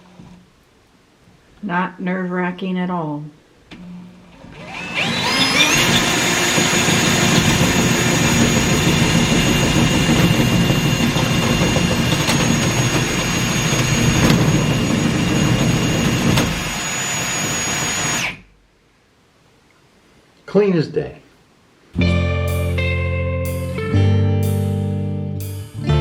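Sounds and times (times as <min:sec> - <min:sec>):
electric motor whining: 0:04.4 - 0:18.5.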